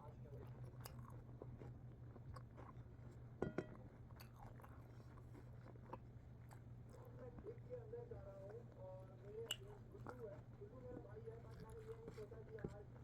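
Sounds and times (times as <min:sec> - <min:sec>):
chewing and biting food: 0:00.3 - 0:07.2, 0:08.4 - 0:10.6.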